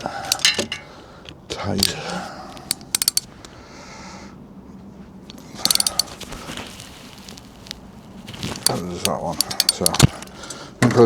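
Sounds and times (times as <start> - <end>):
socket ratchet clicking: 1.8 - 3.3, 5.6 - 6.1, 8.4 - 10.6.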